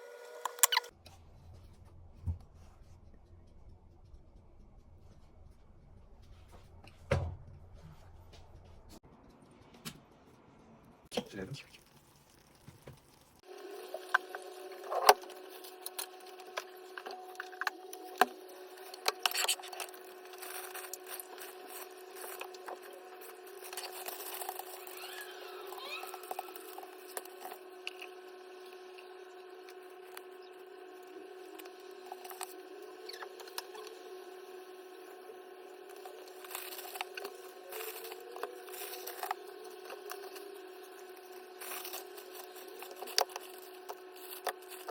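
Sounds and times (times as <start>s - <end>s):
electric hum: 10.9s - 44.9s.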